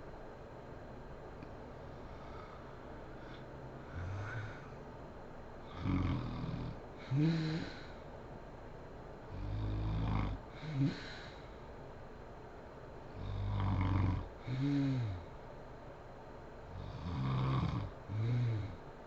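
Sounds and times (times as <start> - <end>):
woman snoring: 3.2 - 4.7, 5.6 - 7.9, 9.3 - 11.4, 13.2 - 15.3, 16.7 - 18.8.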